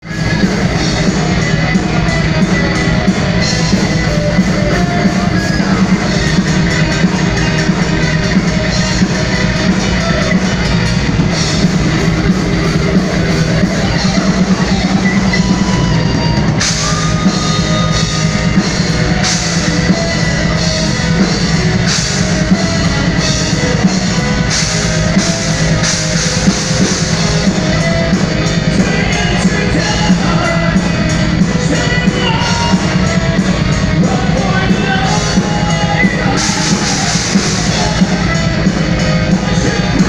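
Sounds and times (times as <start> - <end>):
heavy metal band playing live: 0.0 - 40.0.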